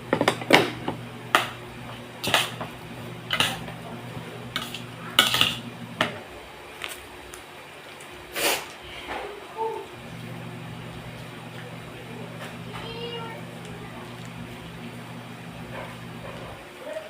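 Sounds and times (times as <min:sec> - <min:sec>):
low steady hum: 0:00.0 - 0:06.5, 0:09.8 - 0:16.6
metal utensil scraping a pan: 0:03.3 - 0:03.8, 0:04.5 - 0:05.7.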